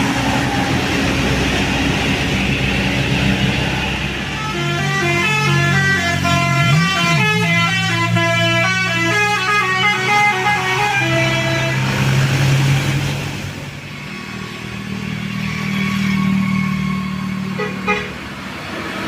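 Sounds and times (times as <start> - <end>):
bus engine running: 0.0 - 19.0
bus air horn playing tune: 4.2 - 12.2, 17.5 - 18.2.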